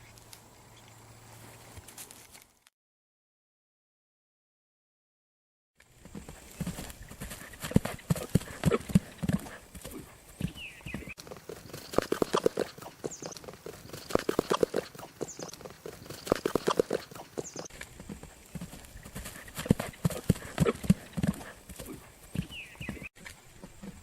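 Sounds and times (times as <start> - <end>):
horse hoofbeats: 5.9 - 24.0.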